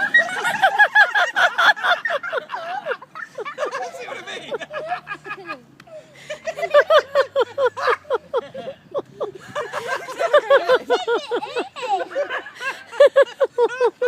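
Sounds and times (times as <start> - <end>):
person laughing hard: 6.3 - 14.0.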